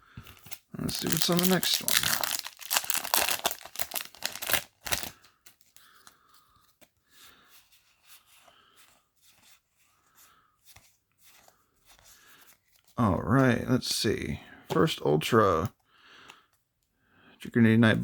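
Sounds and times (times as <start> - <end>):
foil wrapper tearing: 0.8 - 5.2.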